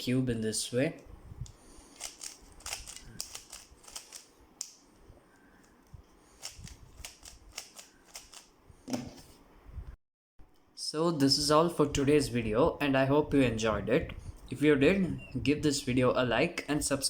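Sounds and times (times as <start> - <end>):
puzzle cube turning clicks: 1.9 - 4.8, 6.4 - 8.5.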